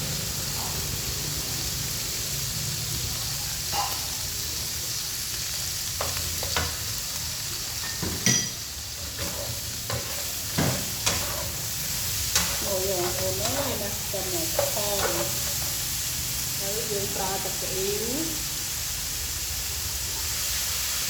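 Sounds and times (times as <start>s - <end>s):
food sizzling in a pan: 0.0s - 21.0s.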